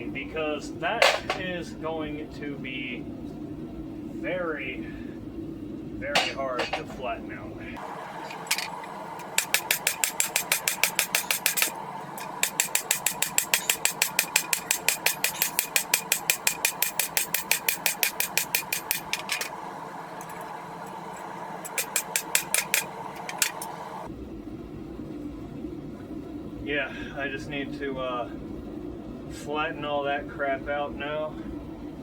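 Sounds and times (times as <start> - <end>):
mechanical hum: 0.0 - 32.0
hammer blows on hot metal: 0.9 - 1.9, 6.0 - 7.2, 8.4 - 19.6.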